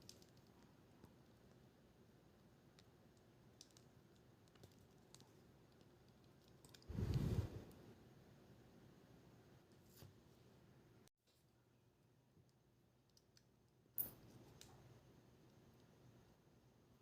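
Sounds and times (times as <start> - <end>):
faint clicks of small tools: 12.4 - 14.9.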